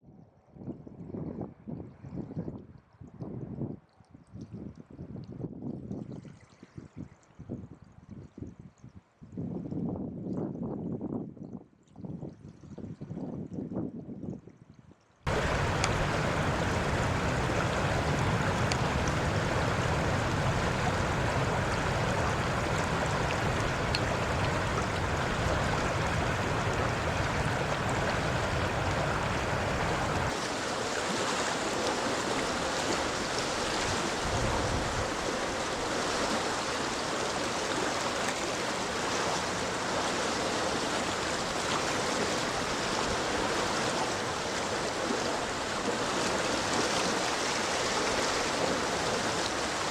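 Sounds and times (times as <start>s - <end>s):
low rumble: 15.3s - 30.3s
floodwater rushing: 15.3s - 49.9s.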